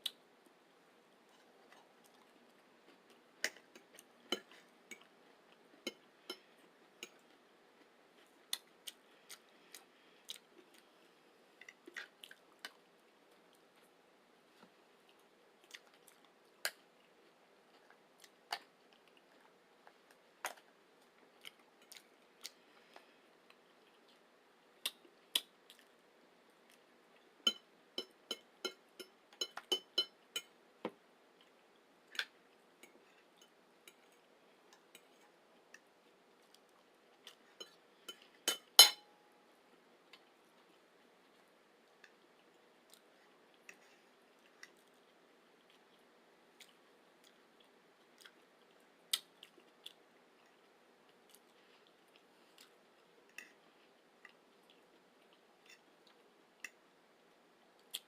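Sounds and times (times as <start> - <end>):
sharp ringing clink: 38.5 - 39.1.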